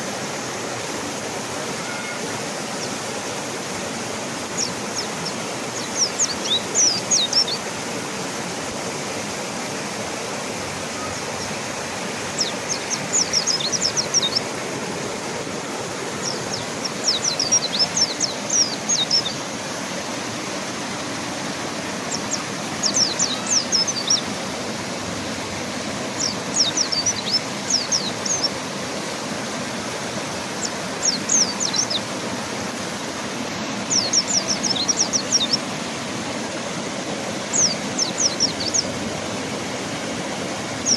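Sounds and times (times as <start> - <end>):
river water rushing: 0.0 - 40.9
bird singing high slurred notes: 12.3 - 14.6, 22.1 - 24.2.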